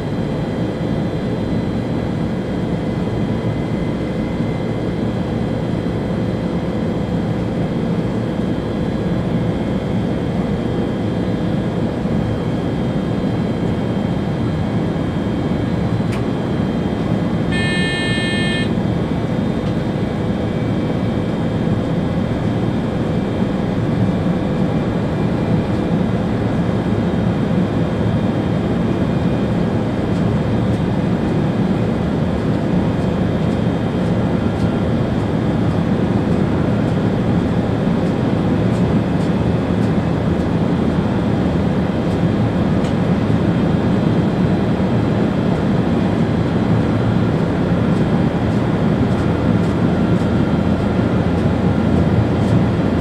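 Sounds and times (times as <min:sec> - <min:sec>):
faint steady tones: 0:17.5 - 0:18.8
short beep: 0:17.5 - 0:18.8
train wheels rumbling on rail: 0:21.6 - 0:53.0.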